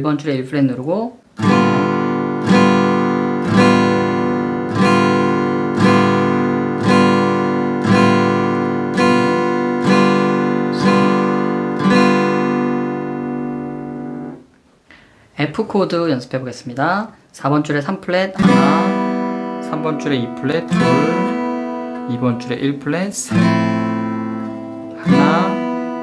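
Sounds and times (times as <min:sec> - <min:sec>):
acoustic guitar strumming: 0:01.4 - 0:14.5, 0:18.4 - 0:26.0.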